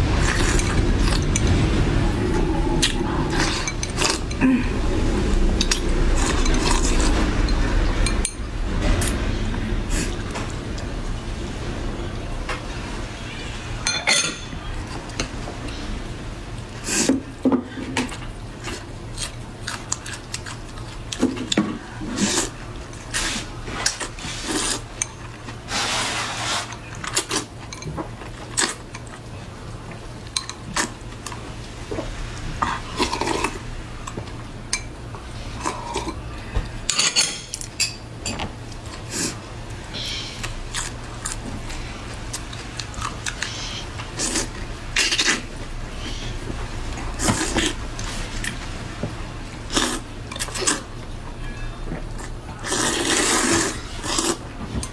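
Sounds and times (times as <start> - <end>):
low rumble: 0.0 - 17.4
utensils clinking against a bowl: 2.4 - 10.9, 13.8 - 15.9, 16.8 - 54.9.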